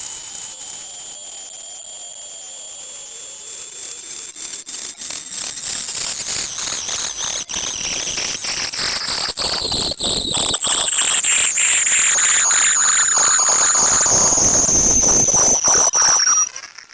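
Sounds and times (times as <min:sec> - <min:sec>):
lower electronic tones: 0:00.0 - 0:16.9
piercing high-pitched electronic tone: 0:00.0 - 0:16.9.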